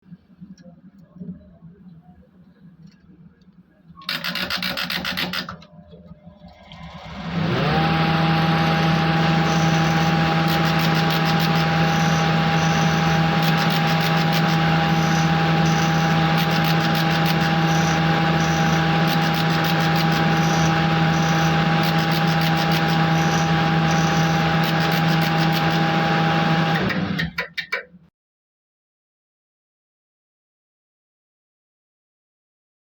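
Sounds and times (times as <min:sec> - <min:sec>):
router bit cutting hiss: 0:04.1 - 0:05.6, 0:06.8 - 0:27.6
router spindle running: 0:06.3 - 0:27.6.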